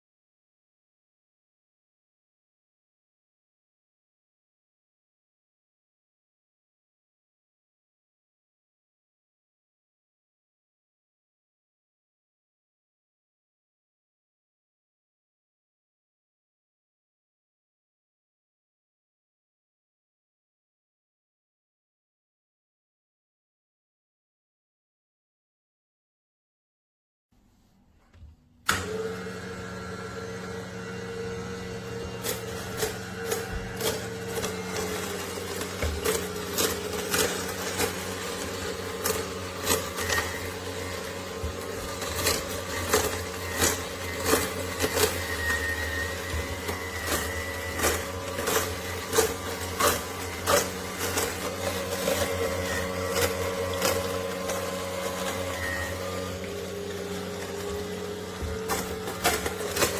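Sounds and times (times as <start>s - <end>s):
juicer motor hum: 28.6s - 59.9s.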